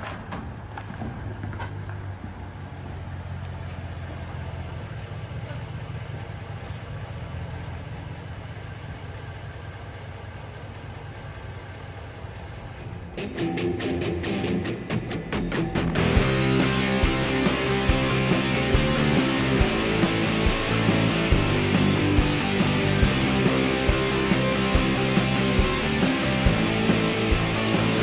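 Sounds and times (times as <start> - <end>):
engine running with low hum: 0.0 - 13.2, 16.2 - 28.0
music: 13.2 - 28.0.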